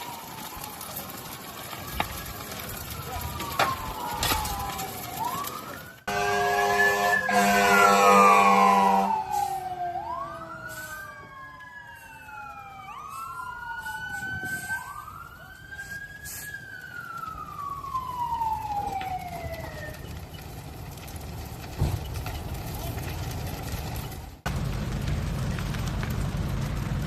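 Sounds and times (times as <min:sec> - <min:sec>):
siren wailing: 0:00.0 - 0:21.2
multi-tone horn blast: 0:06.1 - 0:09.4.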